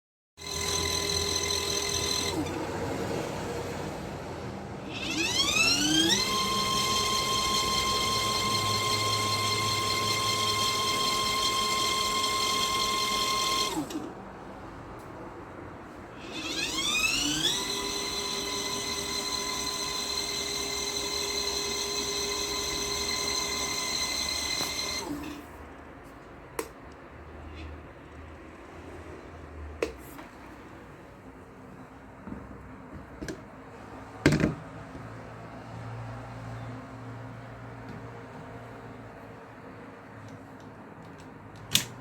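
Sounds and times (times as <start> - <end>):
washing machine motor whining: 0.4 - 4.0, 4.8 - 14.2, 16.1 - 25.6
washing machine motor humming: 4.9 - 14.0.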